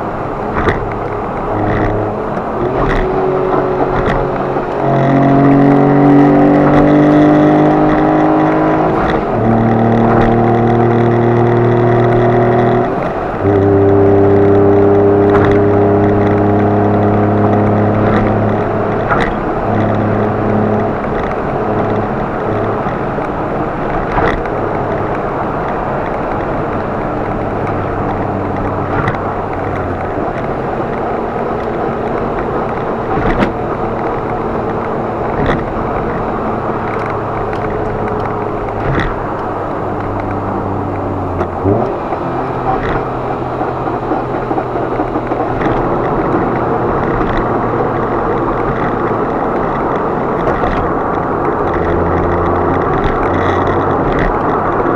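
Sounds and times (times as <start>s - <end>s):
car engine hum: 0.0s - 54.9s
tyre and road noise: 0.0s - 54.9s.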